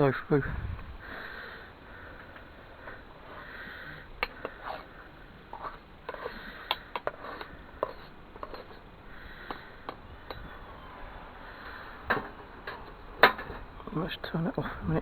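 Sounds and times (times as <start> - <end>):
steady hiss: 0.0 - 15.0
metal tools clinking: 5.5 - 10.6.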